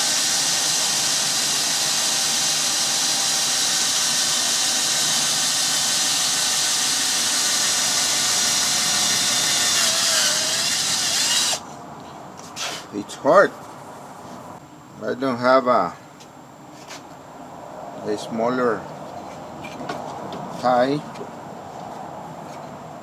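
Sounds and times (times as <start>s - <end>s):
electric drill boring metal: 0.0s - 11.6s.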